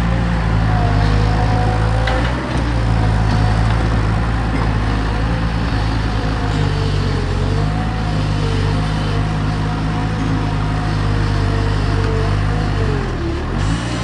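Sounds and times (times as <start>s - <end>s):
diesel engine under load: 0.0s - 14.0s.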